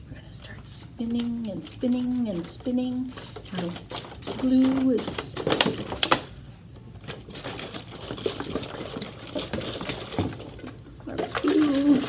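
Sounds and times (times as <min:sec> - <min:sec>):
person speaking: 0:00.0 - 0:06.2, 0:11.0 - 0:12.0
water swirling in a bottle: 0:07.2 - 0:12.0.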